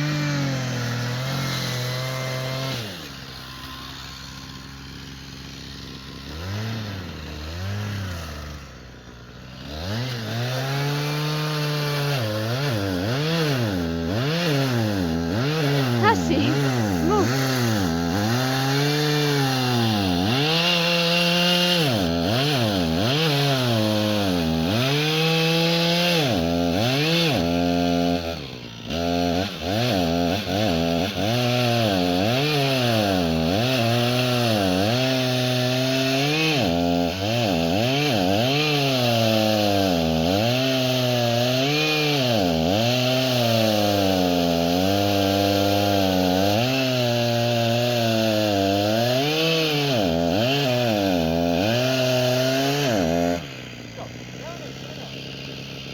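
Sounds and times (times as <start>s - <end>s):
chainsaw cutting wood: 0.0s - 55.9s.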